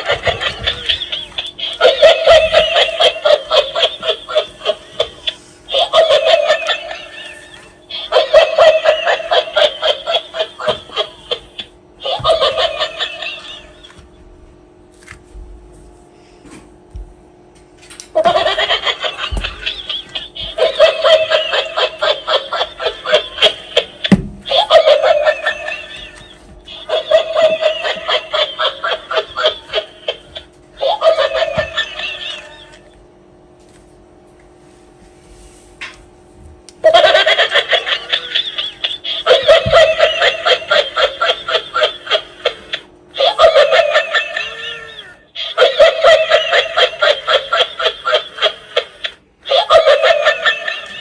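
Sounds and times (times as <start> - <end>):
toy playing recorded laughter: 0.0 - 14.0, 18.0 - 33.0, 36.8 - 51.0.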